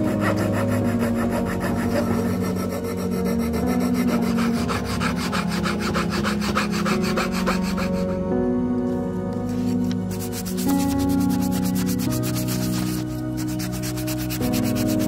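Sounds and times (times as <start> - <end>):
tool rasping wood: 0.0 - 8.1.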